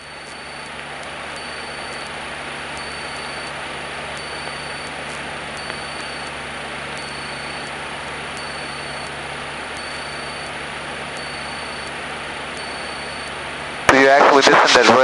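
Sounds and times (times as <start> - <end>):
faint steady whine: 0.0 - 15.0
light high ticks: 4.2 - 6.3.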